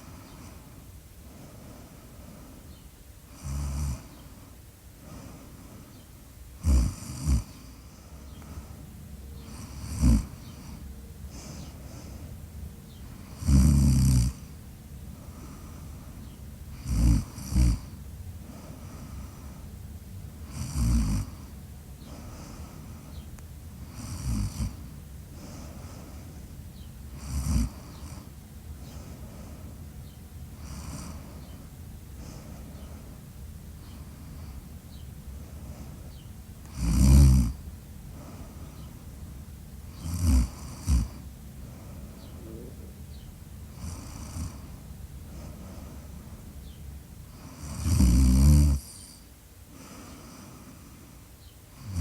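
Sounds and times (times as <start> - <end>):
snoring snorts: 3.4 - 4.1, 6.6 - 7.6, 9.5 - 10.4, 13.3 - 14.4, 16.8 - 18.0, 20.5 - 21.4, 23.9 - 24.8, 27.2 - 28.3, 30.6 - 31.3, 36.7 - 37.6, 39.9 - 41.2, 43.7 - 44.7, 47.4 - 49.2, 51.8 - 52.0.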